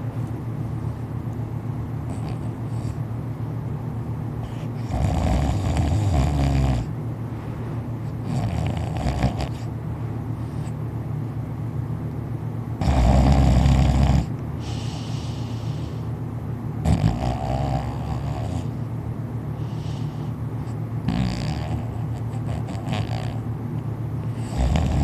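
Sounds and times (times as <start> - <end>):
heavy snoring: 4.8 - 6.9, 8.3 - 9.6, 12.8 - 14.3, 16.8 - 18.7, 21.1 - 23.4, 24.3 - 25.0
quiet breaths: 14.6 - 16.2, 19.6 - 20.8.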